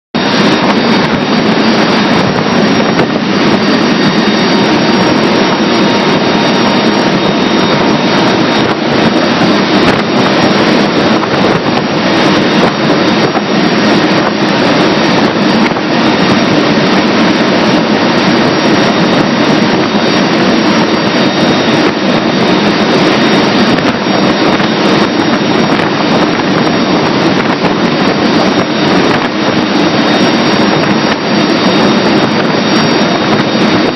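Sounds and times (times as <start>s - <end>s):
aircraft engine drone: 0.0s - 33.9s
rushing air: 0.2s - 33.9s.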